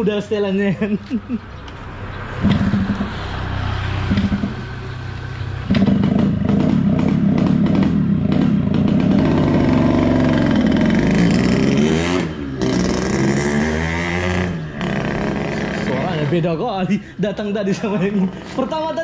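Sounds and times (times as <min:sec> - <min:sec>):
raspy two-stroke engine revving: 0:02.4 - 0:03.2, 0:05.7 - 0:16.6, 0:17.9 - 0:19.0.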